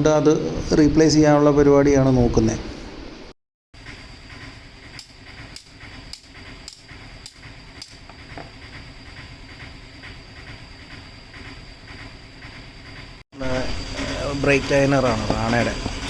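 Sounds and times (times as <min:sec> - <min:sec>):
workshop hum: 0:00.0 - 0:16.0
faint high whine: 0:13.4 - 0:16.0.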